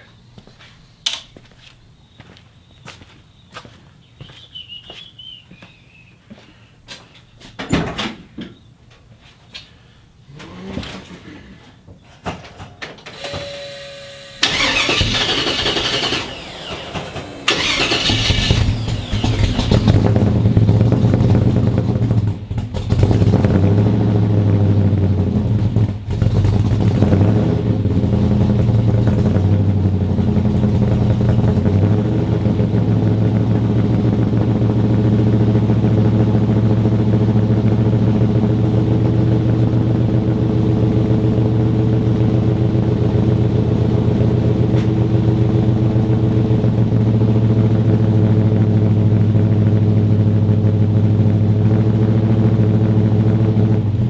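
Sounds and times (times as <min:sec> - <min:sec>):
car engine idling: 0:13.2 - 0:23.4.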